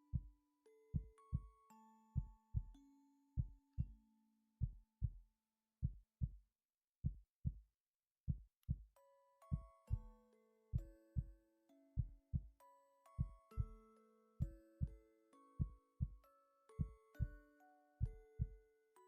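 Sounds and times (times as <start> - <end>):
soft held music notes: 9.0 - 19.0
heartbeat thumps: 13.2 - 13.7.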